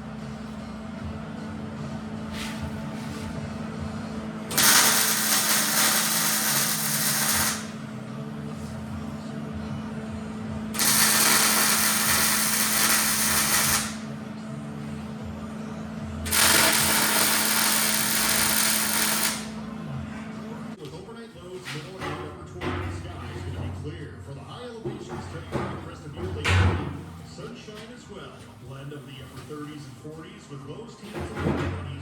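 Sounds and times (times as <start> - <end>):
steady low hum: 0.0 - 20.8
metalworking power tool: 4.5 - 7.8, 10.7 - 14.2, 16.3 - 19.6.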